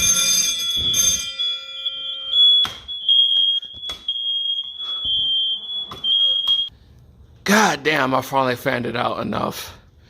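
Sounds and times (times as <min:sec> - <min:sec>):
smoke alarm high-pitched tone: 0:00.0 - 0:06.7.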